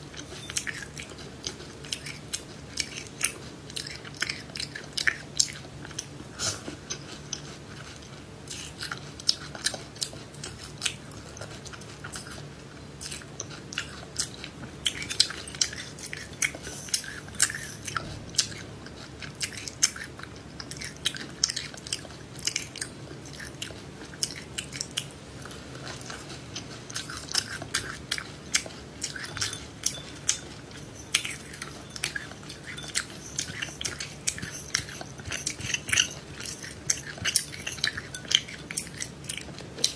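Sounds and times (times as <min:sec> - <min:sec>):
person chewing crunching seeds: 0:00.1 - 0:39.9.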